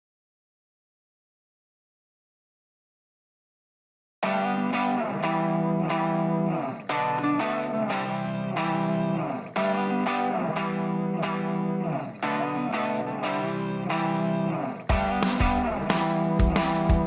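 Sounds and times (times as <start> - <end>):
distorted electric guitar music: 4.2 - 17.0.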